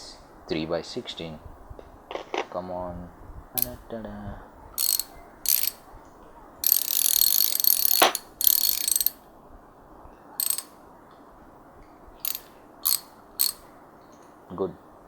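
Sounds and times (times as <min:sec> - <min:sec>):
ratchet wrench clicking: 0:03.6 - 0:03.8, 0:04.8 - 0:05.8, 0:06.6 - 0:09.2, 0:10.4 - 0:10.7, 0:12.2 - 0:13.6.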